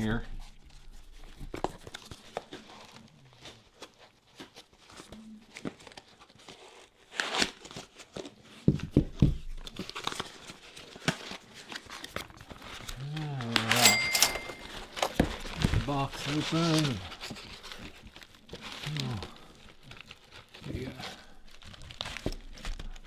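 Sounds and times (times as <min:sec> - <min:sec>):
cardboard and tape tearing: 0:06.3 - 0:07.8.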